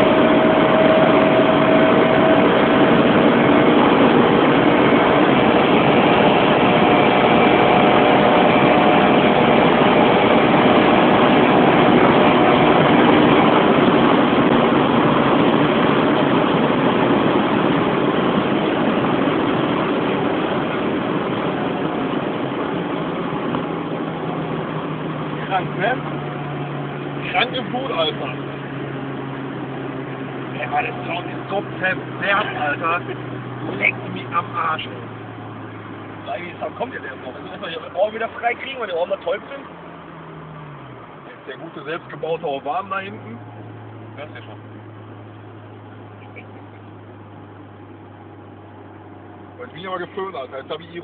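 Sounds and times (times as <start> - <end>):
car engine running: 0.0 - 51.0
dense rush of noise: 0.0 - 51.0.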